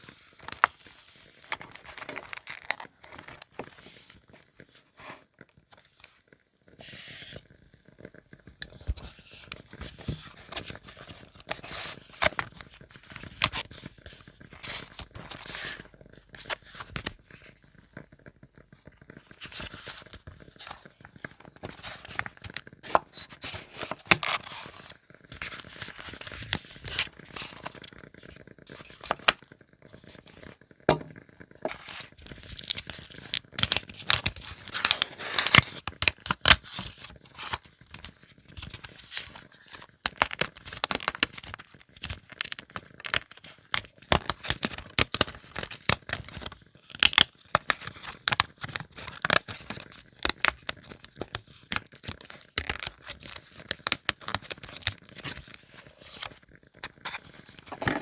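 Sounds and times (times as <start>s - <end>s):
paper crinkling and tearing: 19.4s - 28.0s, 31.7s - 58.0s.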